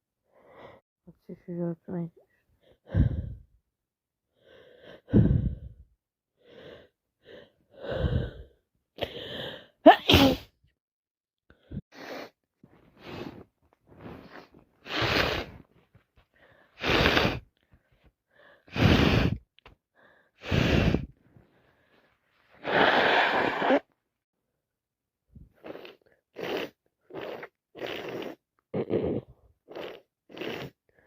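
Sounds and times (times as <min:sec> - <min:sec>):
woman sneezing: 0:09.9 - 0:10.5.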